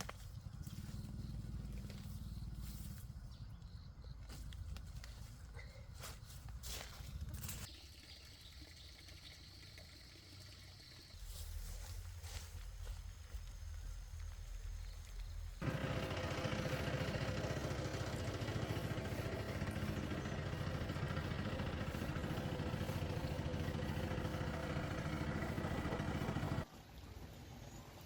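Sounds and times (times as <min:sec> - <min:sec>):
small engine running: 0:00.1 - 0:03.9, 0:15.5 - 0:26.7.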